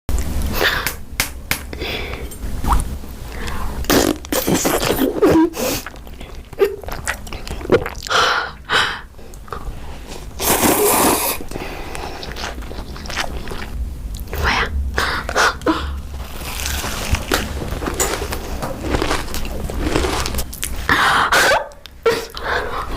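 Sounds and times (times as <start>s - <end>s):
person chewing and crunching: 3.4s - 8.1s, 9.3s - 14.4s, 15.2s - 22.9s
noisy rustle: 16.0s - 20.9s.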